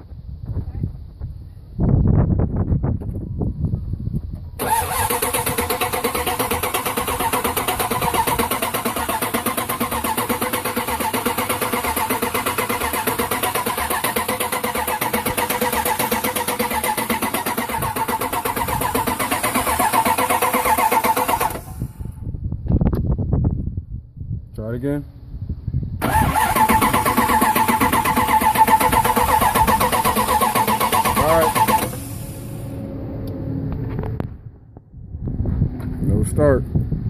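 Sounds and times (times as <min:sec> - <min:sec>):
engine cranking on starter: 0:04.6 - 0:22.2, 0:26.0 - 0:32.9.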